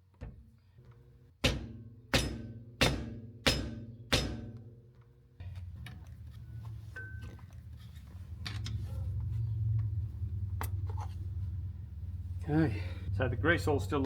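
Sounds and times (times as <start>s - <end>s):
steady low hum: 0.3s - 14.0s
hammer on metal drum: 1.4s - 4.6s.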